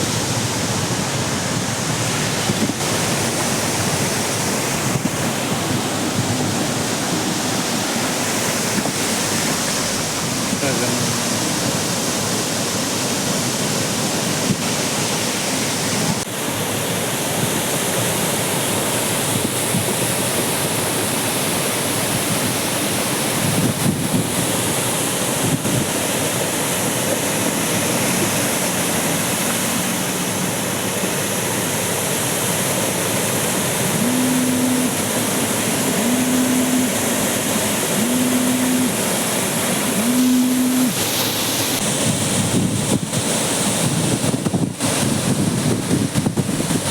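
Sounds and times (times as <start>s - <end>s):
floodwater rushing across road: 0.0s - 46.9s
low tone: 33.8s - 41.0s.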